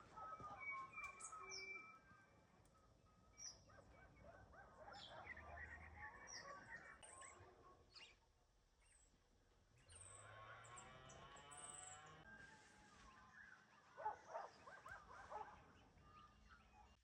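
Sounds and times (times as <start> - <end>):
birds calling: 0.0 - 2.0, 3.4 - 8.2.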